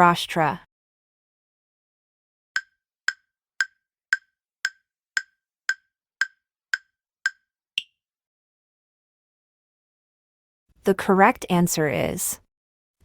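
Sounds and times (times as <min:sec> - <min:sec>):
countdown timer ticks: 0:02.6 - 0:07.9.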